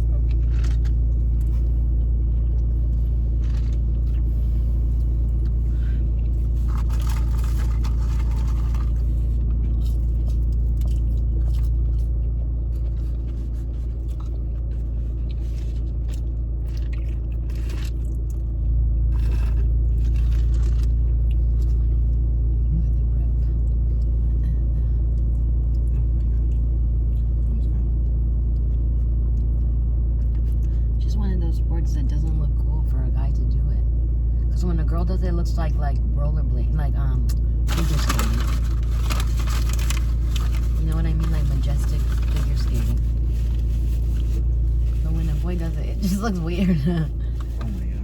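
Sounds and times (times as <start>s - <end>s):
car interior engine rumble: 0.0s - 48.0s
packaging clicks and rustle: 37.7s - 44.6s.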